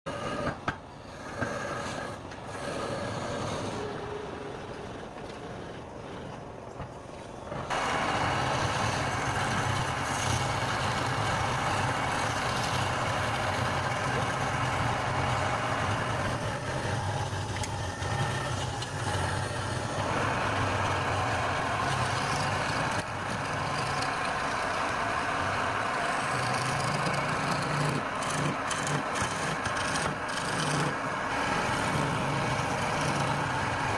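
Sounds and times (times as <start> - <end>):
wood lathe humming: 7.7 - 33.9.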